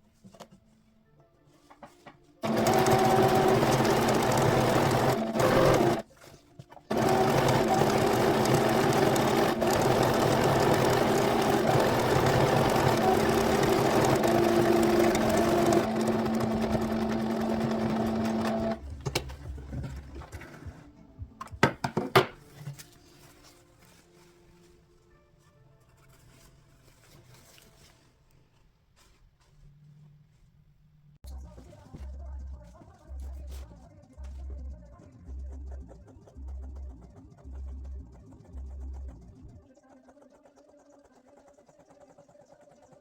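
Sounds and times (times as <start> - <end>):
sewing machine stitching: 2.4 - 6.1, 6.9 - 18.8.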